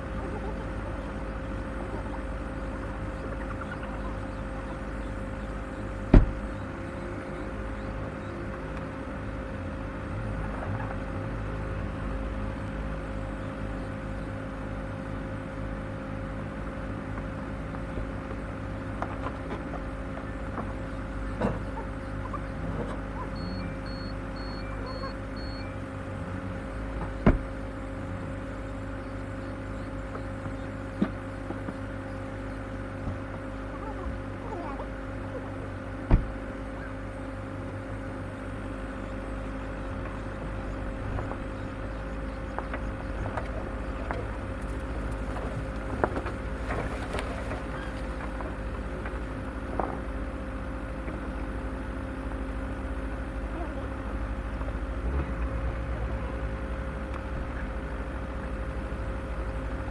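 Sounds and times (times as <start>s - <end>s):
vehicle engine rumbling: 0.0s - 59.9s
sharp knocks: 6.1s - 6.6s
short high beeps: 23.4s - 25.8s.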